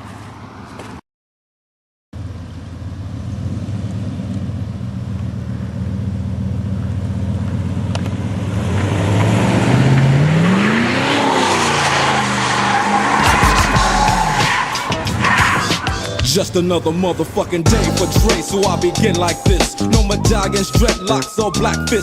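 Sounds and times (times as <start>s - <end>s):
pickup engine revving: 2.2s - 22.0s
tyres squealing: 10.6s - 22.0s.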